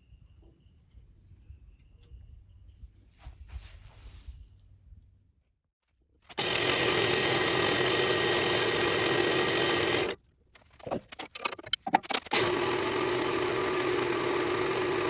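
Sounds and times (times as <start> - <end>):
wood lathe motor running: 6.3 - 10.2, 12.3 - 15.0
clicks and knocks: 10.6 - 12.4.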